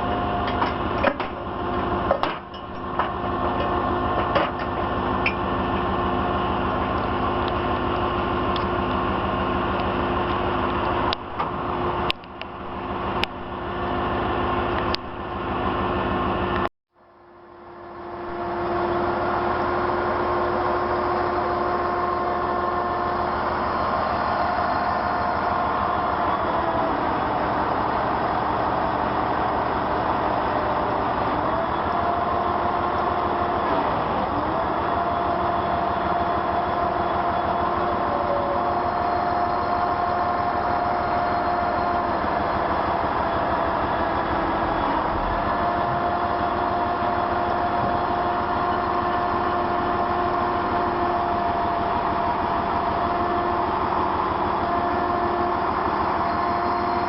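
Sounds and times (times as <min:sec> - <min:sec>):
engine drone: 0:00.0 - 0:57.0
truck engine running: 0:00.0 - 0:57.0.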